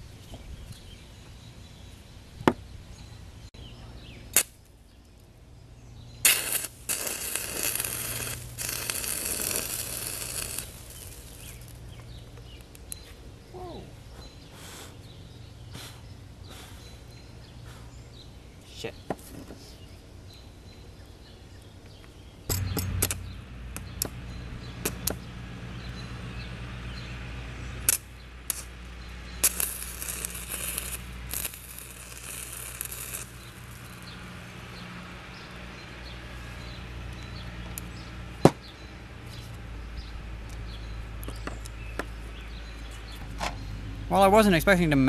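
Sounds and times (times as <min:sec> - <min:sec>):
loud sizzling hiss: 0:06.2 - 0:11.9, 0:27.8 - 0:34.7
welding arc crackling: 0:06.2 - 0:12.9, 0:22.5 - 0:25.2, 0:27.8 - 0:34.8
low hum: 0:19.9 - 0:44.9.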